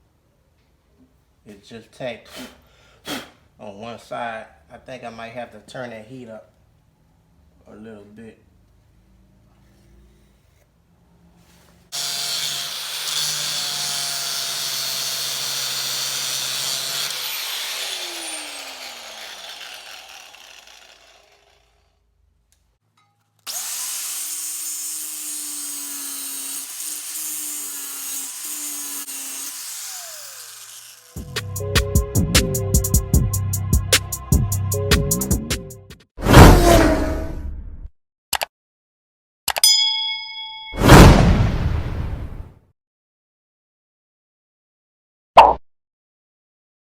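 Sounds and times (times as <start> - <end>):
electric power tool whining: 12.0 - 21.9, 23.5 - 31.9.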